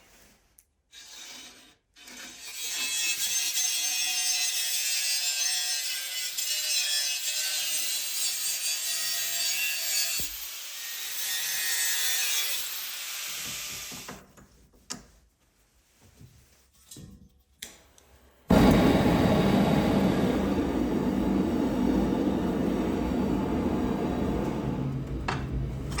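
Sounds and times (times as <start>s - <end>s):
power tool cutting steel: 0.9s - 14.1s, 18.5s - 26.0s.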